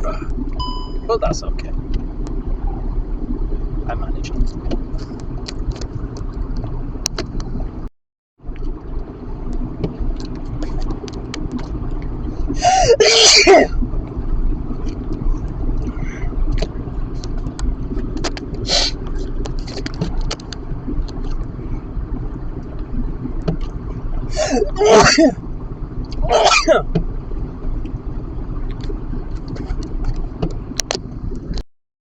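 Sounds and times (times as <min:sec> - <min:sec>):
road noise inside car: 0:00.0 - 0:31.7
man sneezing: 0:12.7 - 0:13.7, 0:24.4 - 0:25.4, 0:26.2 - 0:26.9.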